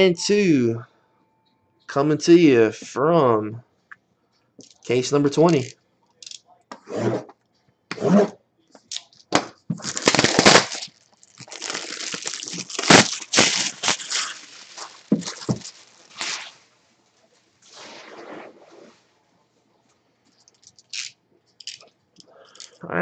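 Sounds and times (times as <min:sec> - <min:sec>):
packaging tearing and crackling: 0:09.8 - 0:16.5, 0:20.6 - 0:21.8.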